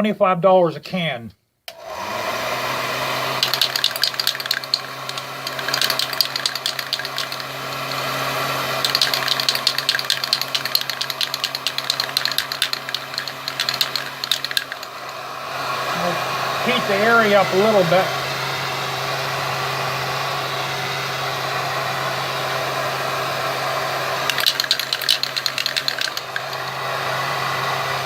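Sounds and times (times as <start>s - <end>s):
heat gun humming: 1.7s - 18.7s, 22.7s - 28.0s
spray can ball rattling: 3.4s - 15.2s, 24.2s - 26.9s.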